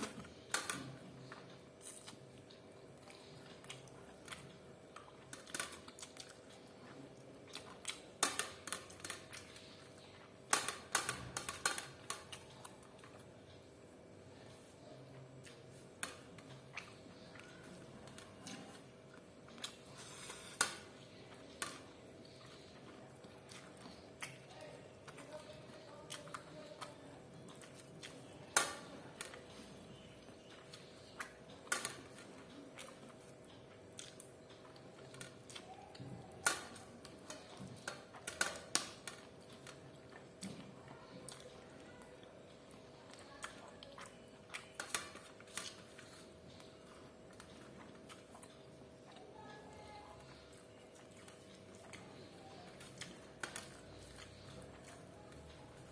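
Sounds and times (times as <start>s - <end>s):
close-miked eating sounds: 0.0s - 55.9s
chewing and biting food: 15.1s - 49.4s, 50.2s - 55.9s.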